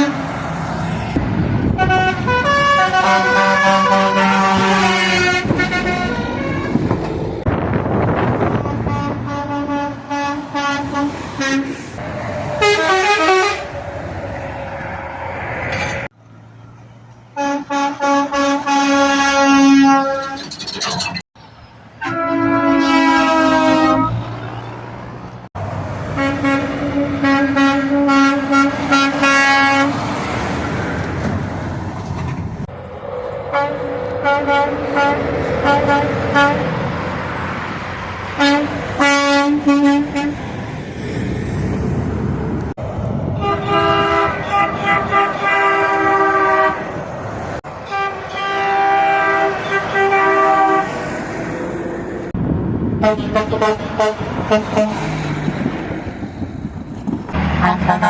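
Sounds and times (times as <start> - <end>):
truck air horns honking: 0.0 - 0.4, 1.6 - 7.0, 8.5 - 13.9, 17.3 - 21.2, 21.9 - 25.5, 26.1 - 30.0, 33.4 - 37.0, 38.4 - 40.4, 43.4 - 47.0, 47.7 - 51.2, 53.0 - 55.8, 57.4 - 58.0
traffic noise: 0.0 - 58.0.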